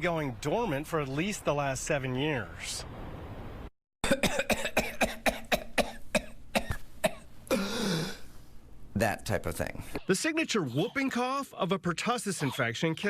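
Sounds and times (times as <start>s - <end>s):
rapid short coughs: 4.0s - 8.2s.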